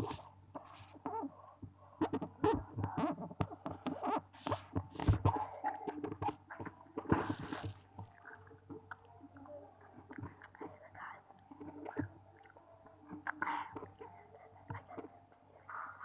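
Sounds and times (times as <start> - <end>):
mouth chewing clicks and smacks: 8.1 - 15.2.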